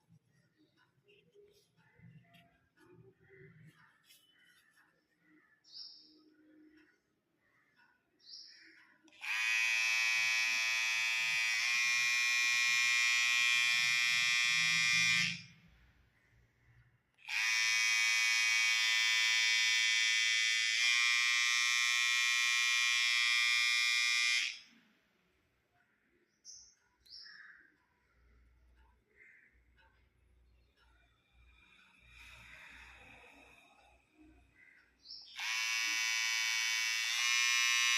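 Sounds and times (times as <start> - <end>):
hair trimmer buzzing: 9.1 - 15.5, 17.2 - 24.7, 35.3 - 37.9.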